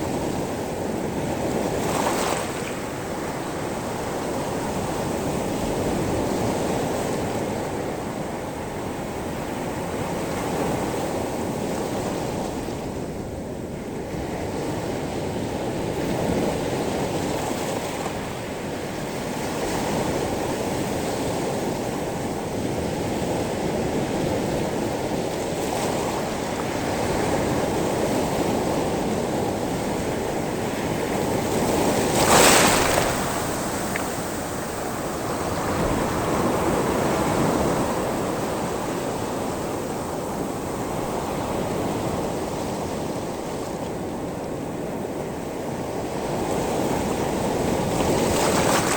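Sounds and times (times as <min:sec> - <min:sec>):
waves washing over pebble beach: 0:30.9 - 0:38.2.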